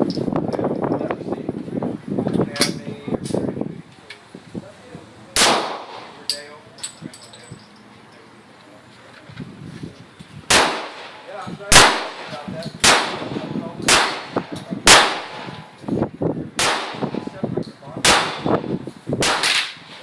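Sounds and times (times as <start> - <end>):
gunshots ringing out: 5.4 - 6.2, 10.5 - 15.6, 16.6 - 17.3, 18.0 - 20.0.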